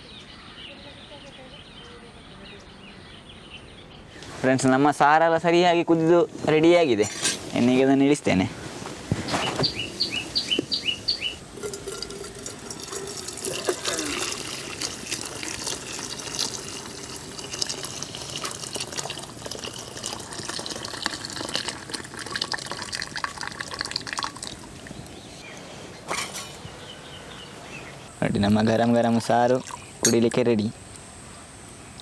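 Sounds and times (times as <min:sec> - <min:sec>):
liquid splashing: 0:11.4 - 0:25.0, 0:29.5 - 0:30.4
small clinks: 0:11.6 - 0:15.0.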